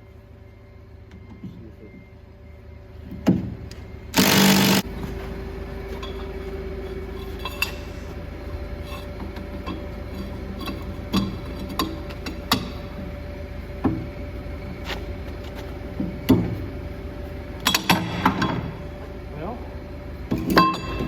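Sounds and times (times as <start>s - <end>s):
steady low hum: 4.0s - 17.7s
impact wrench burst: 4.2s - 4.9s.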